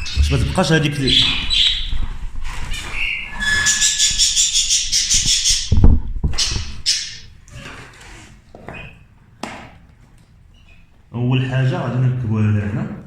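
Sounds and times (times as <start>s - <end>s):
finches chirping: 0.0s - 7.3s.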